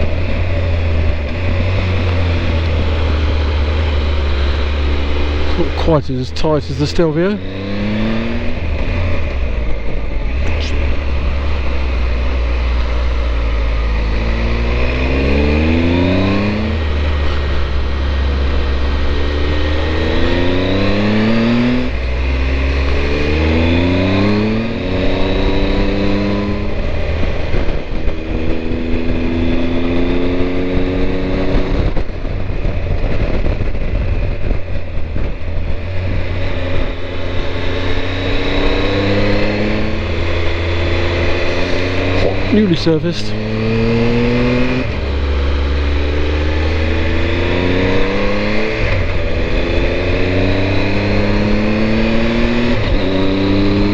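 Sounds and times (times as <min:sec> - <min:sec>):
motorcycle engine accelerating: 0:00.0 - 0:53.9
rush of wind: 0:00.0 - 0:53.9.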